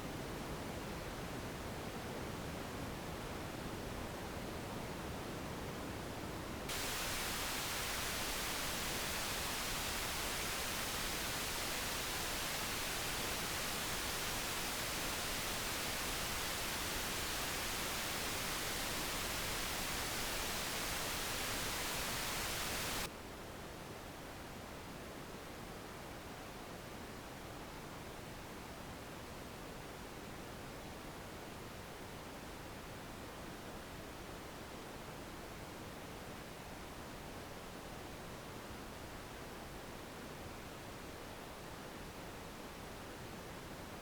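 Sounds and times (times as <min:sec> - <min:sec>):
electrical noise hiss: 0:06.7 - 0:23.1.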